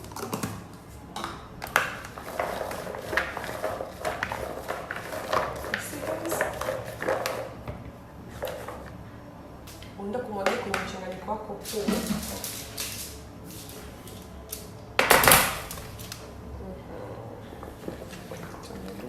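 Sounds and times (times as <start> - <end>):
utensils clicking and scraping: 1.6 - 7.5, 11.6 - 14.7.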